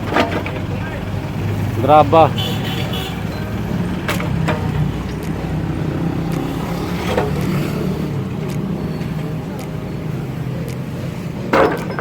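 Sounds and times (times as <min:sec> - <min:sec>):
engine humming steadily: 0:00.0 - 0:12.0
sharp knocks and clinks: 0:11.5 - 0:12.0.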